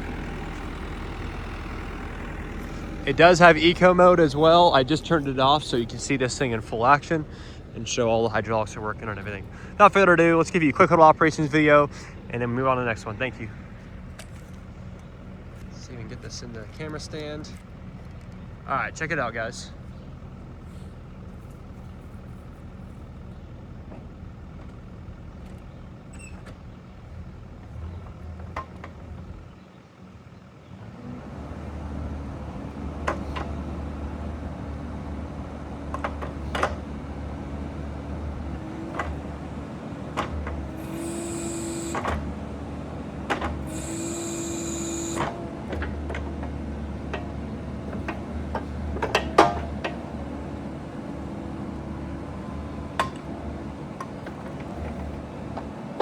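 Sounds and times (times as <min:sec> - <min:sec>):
hydraulic whine: 0:00.0 - 0:18.8, 0:30.7 - 0:56.0
mini excavator diesel engine: 0:00.0 - 0:56.0
metal clanks: 0:32.1 - 0:56.0.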